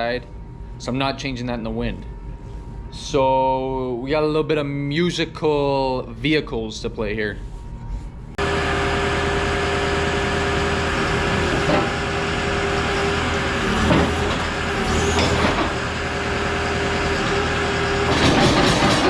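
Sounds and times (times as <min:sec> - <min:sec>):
constant engine whine: 0:00.0 - 0:19.0
heavy vehicle engine running: 0:08.4 - 0:19.0.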